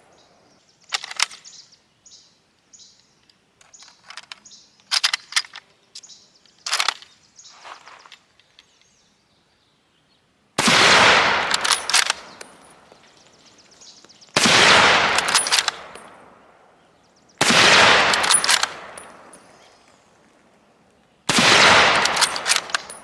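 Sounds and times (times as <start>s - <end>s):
rifle shots: 10.6s - 13.0s, 14.4s - 16.5s, 17.4s - 19.6s, 21.3s - 23.0s
ringing echo: 10.6s - 13.2s, 14.4s - 16.8s, 17.4s - 19.8s, 21.3s - 23.0s.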